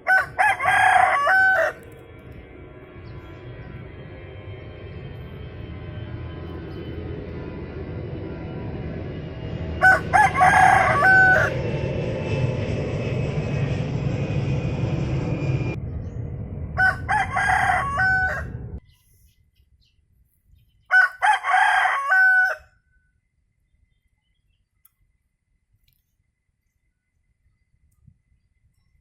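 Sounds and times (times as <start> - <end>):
rooster crowing: 0.0 - 1.8, 9.8 - 11.8, 16.8 - 18.8, 20.9 - 23.0.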